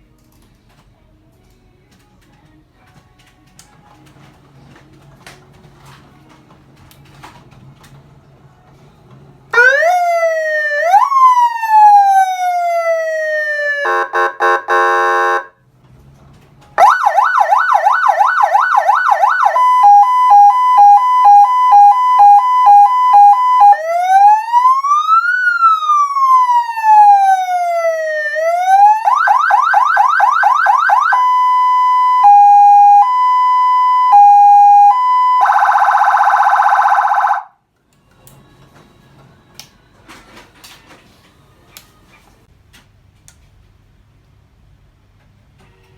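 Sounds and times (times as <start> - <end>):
electronic siren wail and yelp: 9.6 - 15.4, 16.8 - 37.5
harsh horn tone: 13.8 - 15.6.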